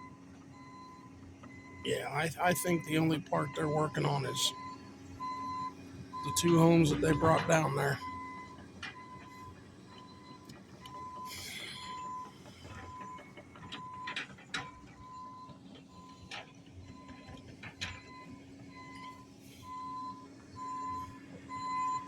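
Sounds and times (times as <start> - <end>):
backup alarm beeping: 1.8 - 8.4.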